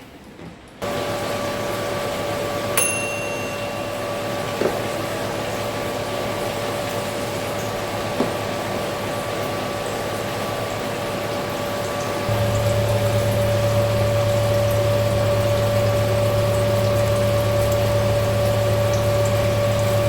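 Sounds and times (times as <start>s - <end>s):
bright ringing clink: 2.8s - 4.6s
kitchen appliance motor humming: 11.8s - 20.0s.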